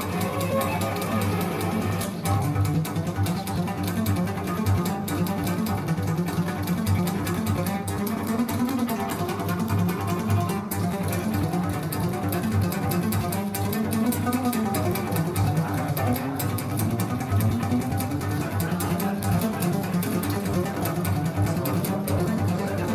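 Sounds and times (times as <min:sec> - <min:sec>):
bowed low strings music: 0:00.0 - 0:22.9.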